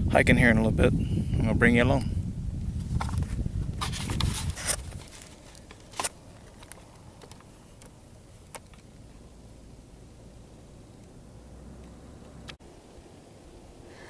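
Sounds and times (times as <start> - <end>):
wind rumbling on microphone: 0.0 - 12.6
rustling: 2.8 - 11.2
faint hiss: 9.0 - 14.0.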